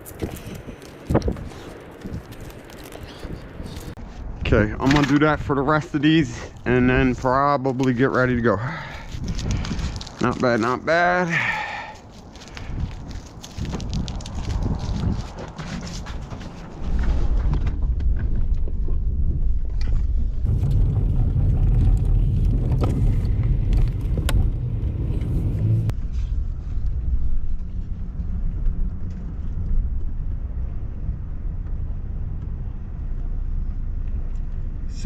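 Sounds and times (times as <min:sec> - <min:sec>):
truck engine rumbling: 0:20.0 - 0:29.4.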